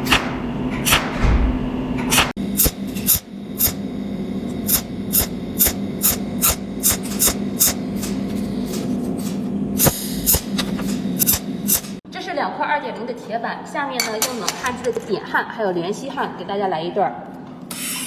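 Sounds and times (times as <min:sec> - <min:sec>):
welding machine hum: 0:00.0 - 0:12.0.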